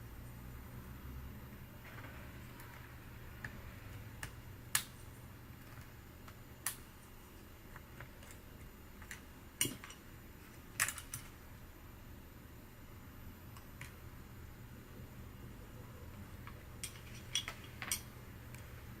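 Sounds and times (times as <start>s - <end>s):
tools clicking and tapping: 9.0s - 10.0s, 16.4s - 18.1s.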